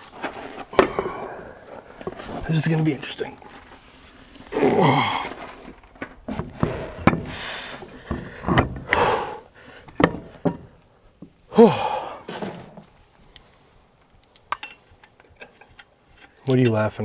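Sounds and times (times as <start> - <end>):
truck wheel knocking onto hub: 0.1 - 13.0
hard breathing: 0.4 - 13.8.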